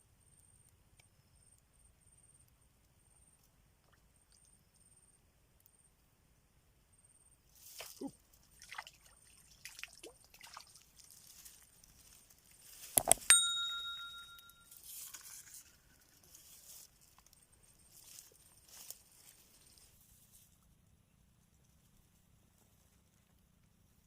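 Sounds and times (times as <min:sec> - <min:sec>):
rustling and handling noises: 0:10.9 - 0:20.6
sharp metallic clink: 0:13.2 - 0:14.8.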